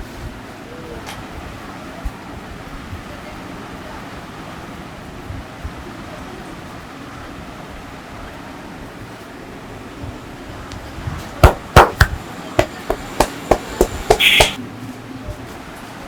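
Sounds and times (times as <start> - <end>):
hands smacking body: 11.4 - 14.6.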